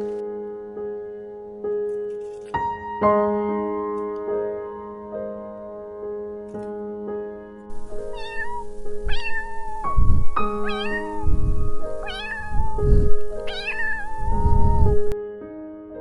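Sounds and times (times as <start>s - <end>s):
soft piano music: 0.0s - 16.0s
cat meowing: 7.7s - 15.2s.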